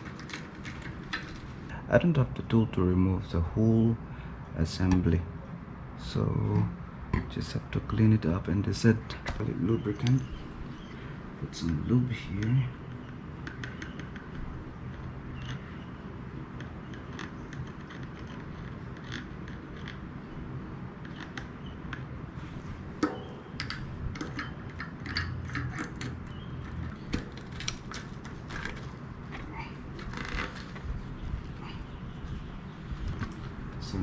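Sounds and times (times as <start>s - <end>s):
small metal clicks and taps: 23.0s - 29.4s.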